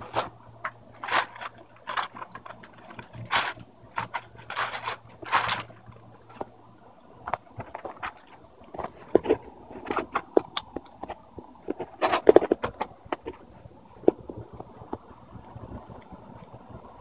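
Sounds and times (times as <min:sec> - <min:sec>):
plastic parts clicking and tapping: 0:00.0 - 0:06.6, 0:07.2 - 0:13.4.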